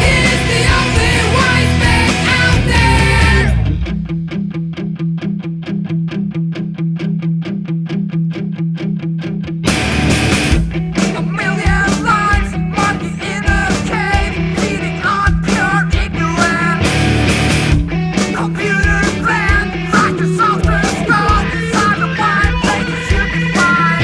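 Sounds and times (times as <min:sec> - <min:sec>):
loud rock band playing: 0:00.0 - 0:04.6, 0:09.6 - 0:24.0
picked guitar figure: 0:00.0 - 0:24.0.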